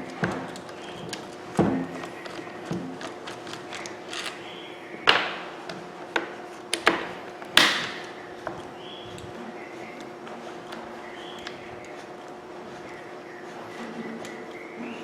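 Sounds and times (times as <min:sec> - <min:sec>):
screwdriver clicks and knocks: 0:00.0 - 0:04.5, 0:05.1 - 0:09.3
loose parts rattling: 0:00.0 - 0:05.9.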